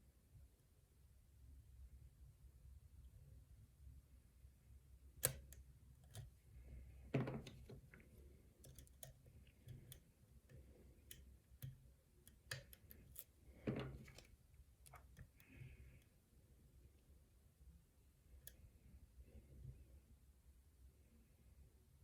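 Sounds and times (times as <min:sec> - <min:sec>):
lock pick clicking and scraping: 0:05.2 - 0:06.4, 0:07.2 - 0:15.6.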